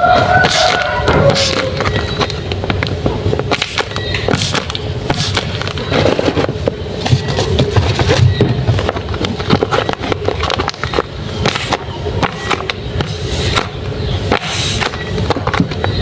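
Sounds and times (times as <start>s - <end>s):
packaging rustling and crinkling: 0.6s - 11.7s.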